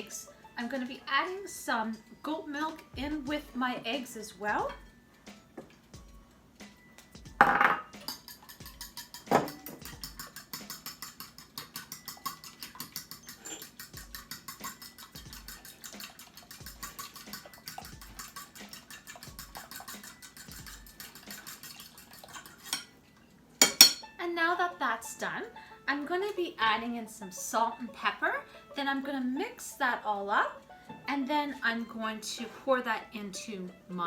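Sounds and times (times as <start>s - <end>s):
utensil clicking against bowl: 8.0s - 22.6s.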